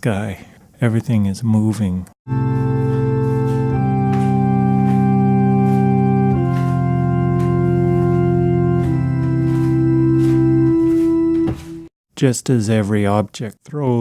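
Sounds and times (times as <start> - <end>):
slow organ chords: 2.3 - 11.9.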